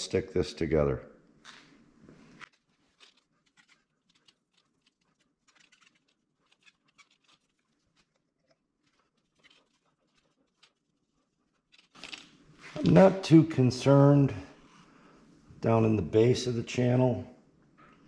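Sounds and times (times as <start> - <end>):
small ticks and rustles of handwork: 1.4 - 12.8.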